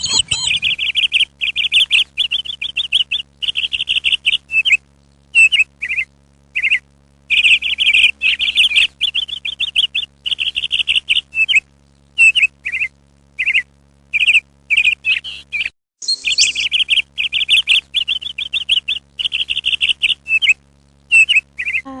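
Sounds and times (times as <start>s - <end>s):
small birds chirping and trilling: 0.0s - 22.0s
steady low hum: 0.0s - 22.0s.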